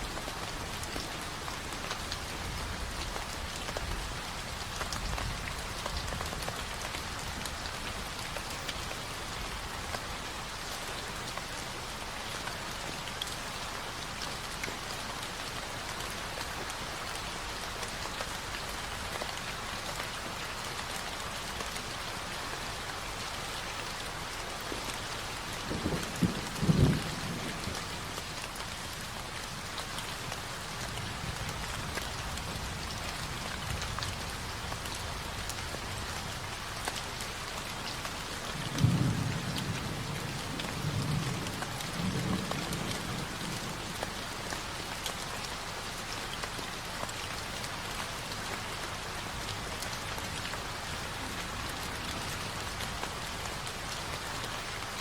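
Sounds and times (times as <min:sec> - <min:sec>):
steady rain falling: 0:00.0 - 0:55.0
thunder rumbling: 0:25.7 - 0:28.2.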